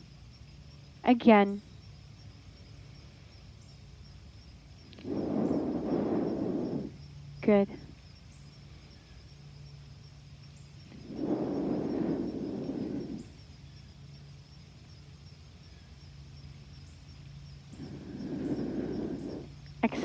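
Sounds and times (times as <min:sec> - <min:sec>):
faint low hum: 0:00.0 - 0:20.0
slow deep exhale: 0:04.9 - 0:07.9, 0:10.8 - 0:13.6, 0:17.7 - 0:20.0.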